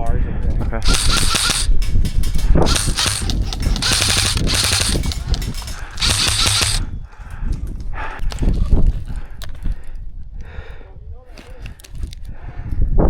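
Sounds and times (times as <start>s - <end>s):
airsoft rifle firing bursts: 0.8s - 6.9s.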